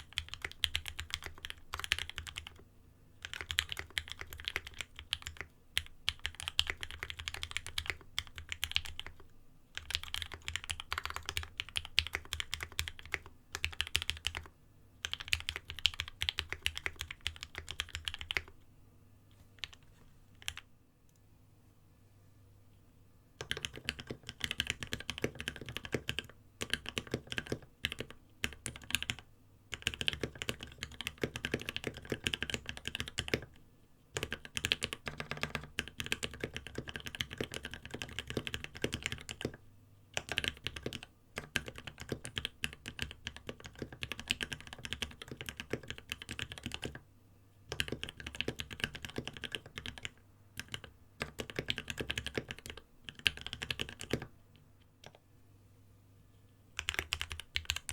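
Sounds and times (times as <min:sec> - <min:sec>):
typing on mechanical keyboard: 0:00.0 - 0:02.6, 0:03.2 - 0:09.2, 0:09.8 - 0:18.6, 0:20.4 - 0:20.7, 0:23.4 - 0:33.6, 0:34.2 - 0:39.6, 0:40.2 - 0:47.0, 0:47.7 - 0:54.3, 0:56.8 - 0:57.9.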